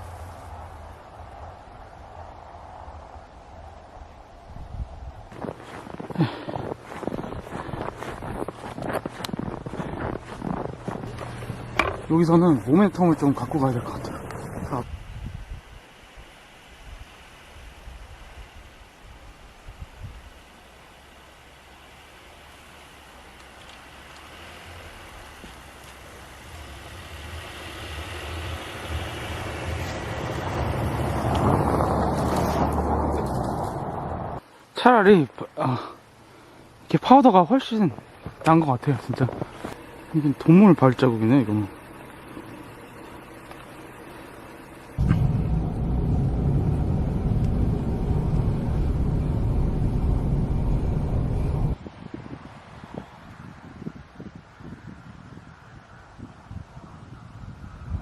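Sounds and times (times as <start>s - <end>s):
tyres on snow: 0.0s - 1.6s, 5.3s - 14.9s, 20.1s - 51.8s
car engine drone: 5.4s - 14.9s, 20.2s - 34.4s, 37.6s - 51.8s.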